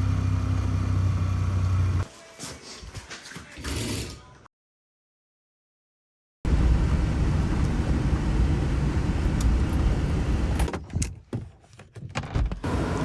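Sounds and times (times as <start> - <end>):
vehicle driving rumble: 6.5 - 10.7.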